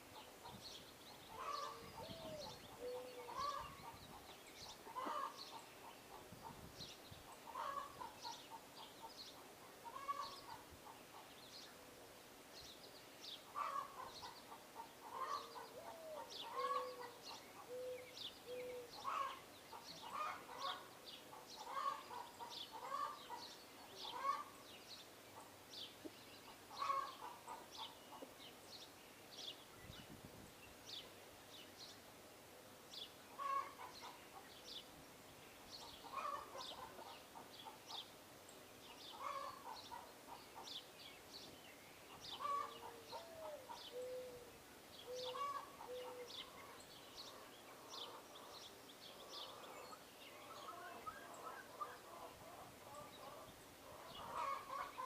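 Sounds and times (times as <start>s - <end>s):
birds calling: 0.0s - 11.8s, 13.5s - 30.0s, 33.0s - 35.0s, 35.6s - 55.0s.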